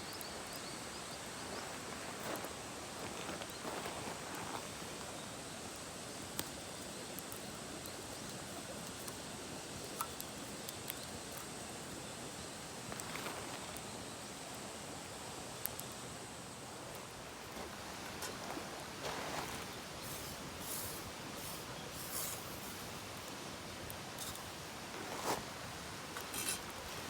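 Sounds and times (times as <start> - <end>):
mountain stream rushing: 16.8 - 27.0.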